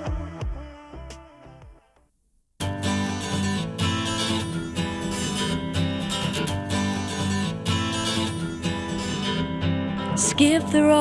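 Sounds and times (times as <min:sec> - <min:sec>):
acoustic guitar strumming: 0:02.6 - 0:11.0.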